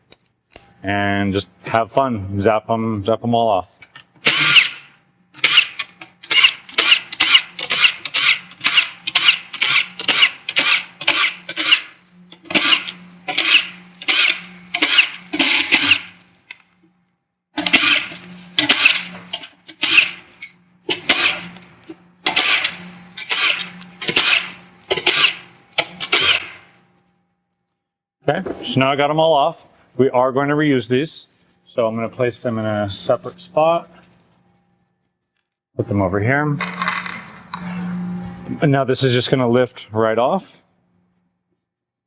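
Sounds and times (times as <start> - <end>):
power drill short bursts: 4.2 - 16.2, 17.6 - 19.2, 19.8 - 20.2, 20.9 - 21.5, 22.2 - 25.4, 26.0 - 26.6.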